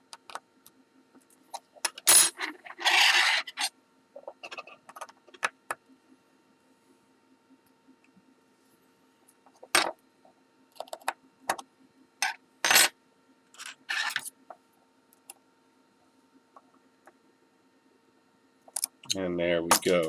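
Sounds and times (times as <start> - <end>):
metal tool scraping: 2.1 - 3.7.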